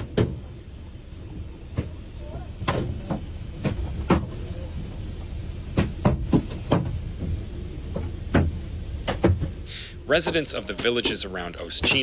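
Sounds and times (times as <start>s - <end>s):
steady low rumble: 0.0s - 12.0s
sharp knocks and clicks: 5.7s - 9.6s, 10.2s - 12.0s.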